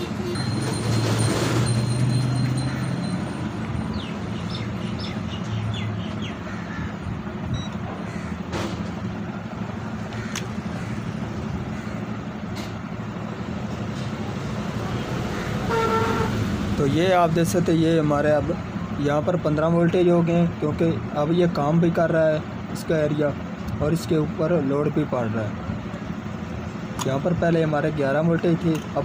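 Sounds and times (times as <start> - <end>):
traffic noise: 0.0 - 29.0.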